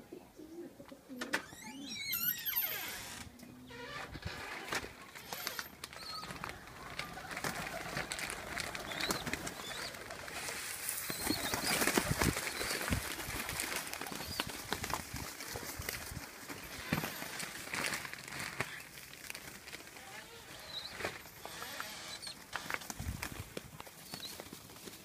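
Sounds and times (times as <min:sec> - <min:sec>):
wild birds chirping: 0:05.0 - 0:14.8, 0:20.0 - 0:22.6.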